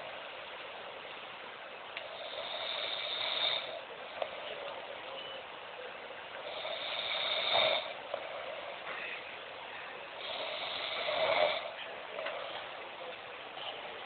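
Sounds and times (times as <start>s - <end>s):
quiet breathing: 2.0s - 5.4s, 6.3s - 12.8s
man snoring: 2.1s - 3.8s, 6.4s - 8.7s, 10.2s - 11.8s.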